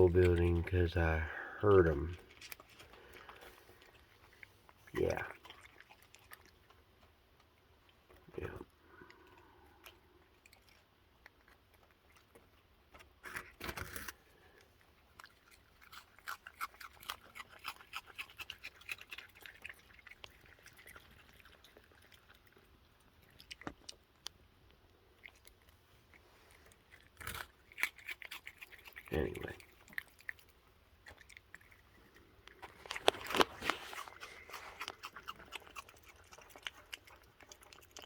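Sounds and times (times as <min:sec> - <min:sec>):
raccoons crunching cookies: 0:00.0 - 0:38.0
animal scuffle: 0:32.6 - 0:34.9.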